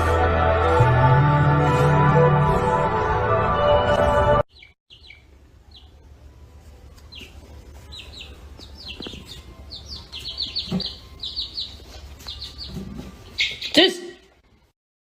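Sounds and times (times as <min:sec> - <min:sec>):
small birds chirping: 0:04.5 - 0:06.2, 0:06.9 - 0:13.9.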